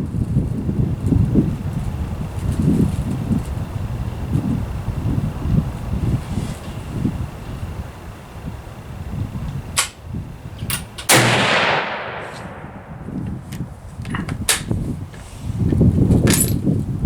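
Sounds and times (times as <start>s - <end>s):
rifle shot with long echo: 11.1s - 13.4s.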